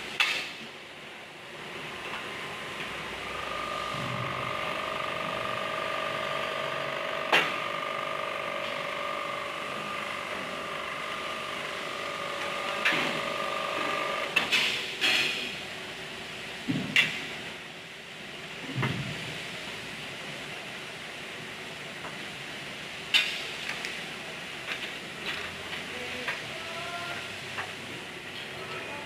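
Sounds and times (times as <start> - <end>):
punch machine motor hum: 1.5 - 15.0.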